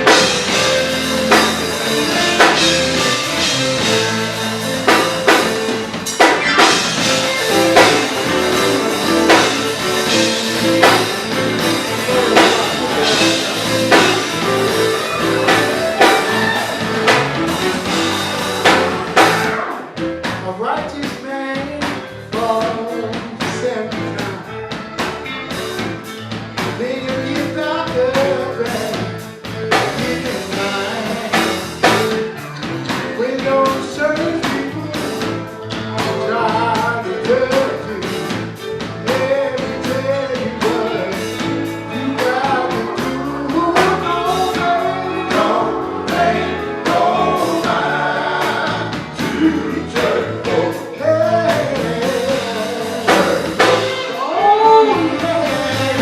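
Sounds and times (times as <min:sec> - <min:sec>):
drums: 0:00.0 - 0:56.0
guitar: 0:00.0 - 0:56.0
person singing: 0:06.8 - 0:18.2, 0:39.1 - 0:56.0.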